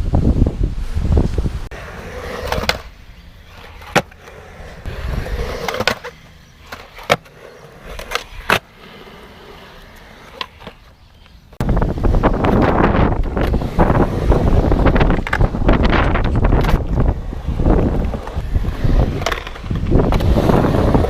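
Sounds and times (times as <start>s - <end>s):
skateboard wheels rolling: 0.3s - 21.0s
skateboard clacking on ground: 3.5s - 4.4s, 15.0s - 21.0s.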